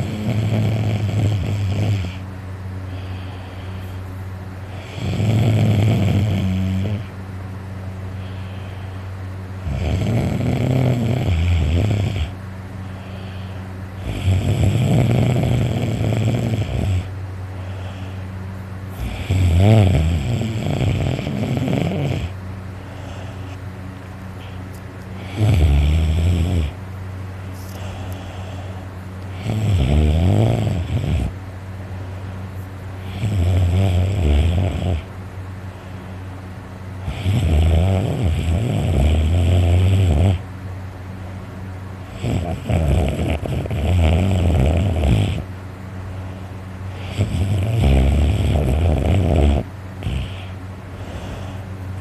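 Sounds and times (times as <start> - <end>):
person snoring heavily: 0.0 - 2.2, 4.7 - 7.1, 9.6 - 18.3, 18.9 - 23.6, 25.2 - 26.8, 27.5 - 31.4, 33.0 - 35.1, 37.0 - 40.4, 42.0 - 45.5, 46.9 - 52.0
steady low hum: 0.0 - 52.0.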